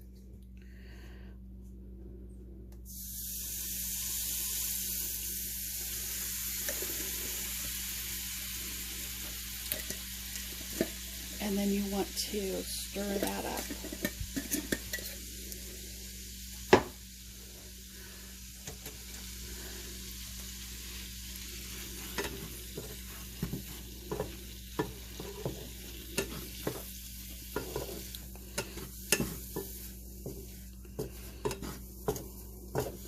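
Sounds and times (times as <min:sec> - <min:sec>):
food sizzling in a hot pan: 0:02.9 - 0:33.0
spoon tapping and scraping pan: 0:09.7 - 0:10.0, 0:13.1 - 0:15.2, 0:22.1 - 0:26.9, 0:27.5 - 0:33.0
spoon knocking on pan: 0:28.6 - 0:30.4.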